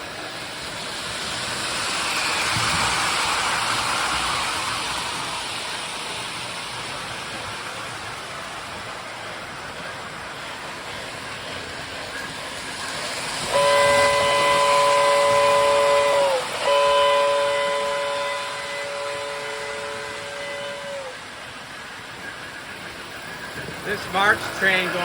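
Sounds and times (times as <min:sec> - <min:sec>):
steady hiss of toy trains: 0:00.0 - 0:25.0
model train whistle blasts: 0:13.5 - 0:21.3.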